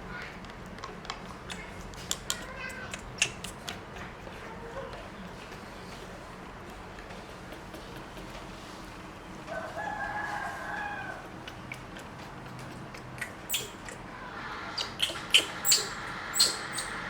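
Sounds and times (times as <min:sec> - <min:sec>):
rooster crowing: 0:09.5 - 0:11.3.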